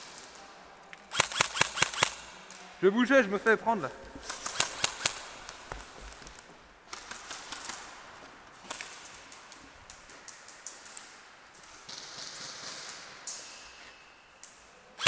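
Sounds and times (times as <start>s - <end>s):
airsoft gunfire: 1.1s - 2.3s, 4.2s - 5.4s.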